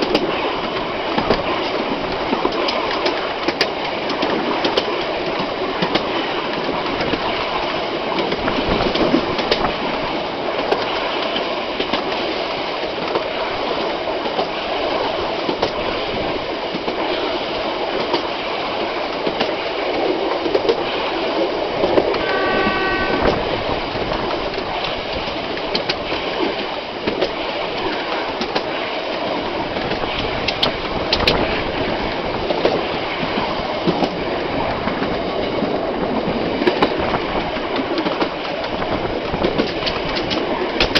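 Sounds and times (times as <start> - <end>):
train rumbling along rails: 0.0 - 40.9
wheels clicking over rail joints: 0.0 - 40.9
locomotive signal blast: 22.2 - 23.4.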